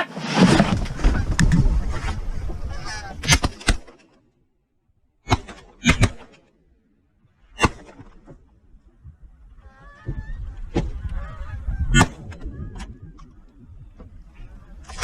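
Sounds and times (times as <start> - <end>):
geese honking: 2.6 - 3.4, 9.6 - 13.5
shotgun blasts: 5.3 - 6.4, 7.6 - 8.2.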